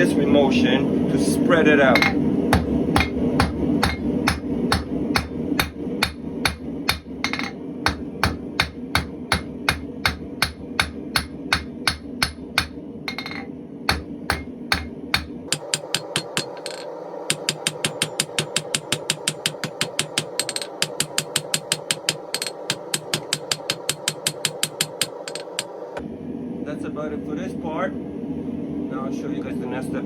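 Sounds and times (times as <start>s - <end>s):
steady low hum: 0.0s - 30.0s
hammer striking hot steel on anvil: 1.9s - 25.8s.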